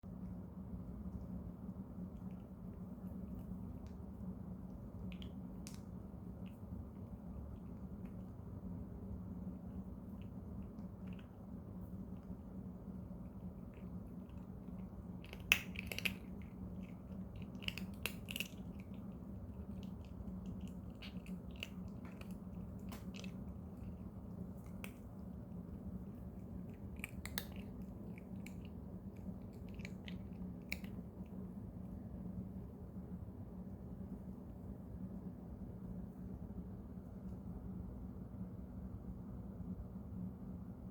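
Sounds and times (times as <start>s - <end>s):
cat chewing crunchy treats: 2.0s - 31.9s.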